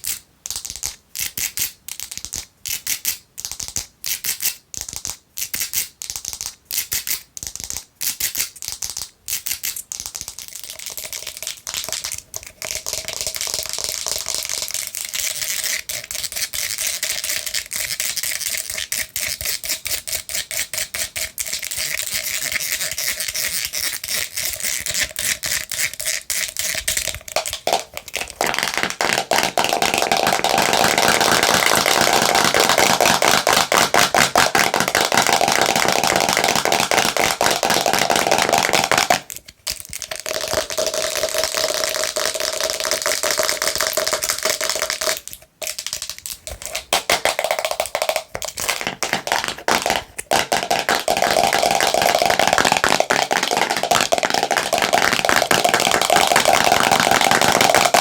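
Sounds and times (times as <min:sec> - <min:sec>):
fingernails tapping plastic container: 0:46.6 - 0:58.0.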